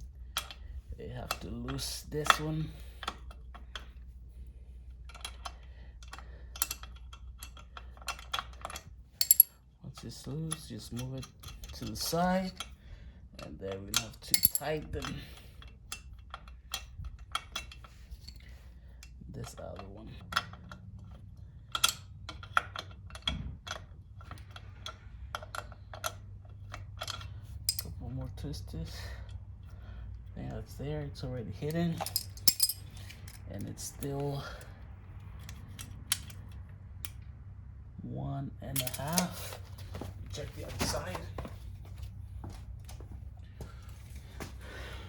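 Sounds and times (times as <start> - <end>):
steady low hum: 0.0 - 45.0
wrenches clicking on metal: 5.0 - 12.8, 13.7 - 28.0, 31.6 - 37.1, 38.7 - 39.6.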